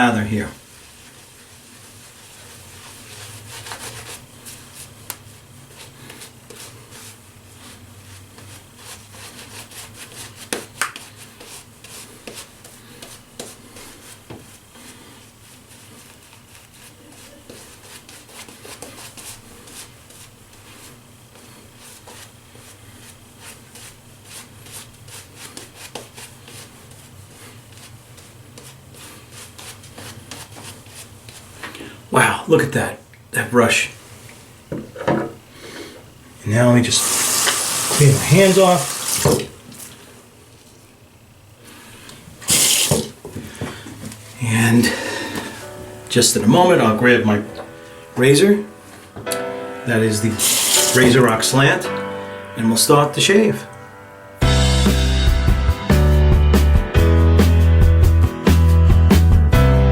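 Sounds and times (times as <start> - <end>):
shaving brush rubbing lather: 0.8 - 6.0, 36.6 - 39.5, 42.4 - 43.1, 49.9 - 51.7.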